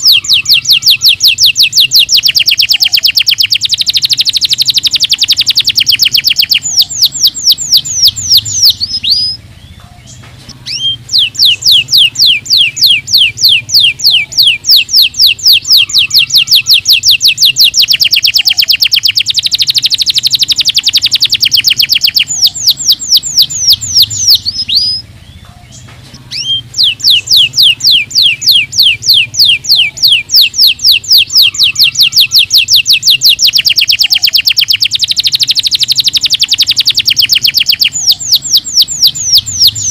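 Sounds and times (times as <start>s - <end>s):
canary singing fast trills: 0.0s - 39.9s.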